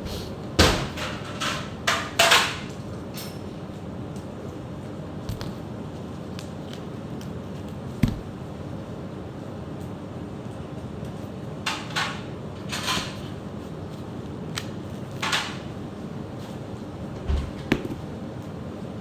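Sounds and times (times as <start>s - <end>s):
scrapes and knocks: 5.3s - 5.6s, 8.0s - 8.4s
low thump: 8.0s - 8.4s.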